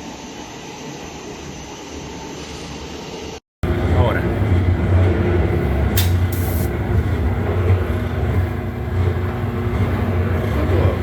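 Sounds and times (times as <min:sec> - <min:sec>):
roasting machine humming: 0:03.6 - 0:11.0.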